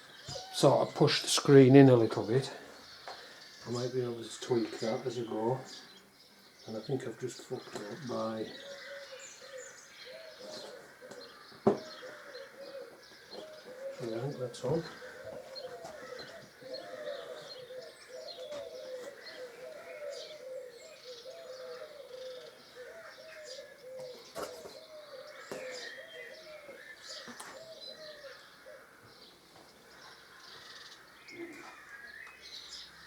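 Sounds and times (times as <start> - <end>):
small birds chirping: 0.0 - 33.0
pigeon cooing: 7.8 - 29.0, 31.3 - 31.9.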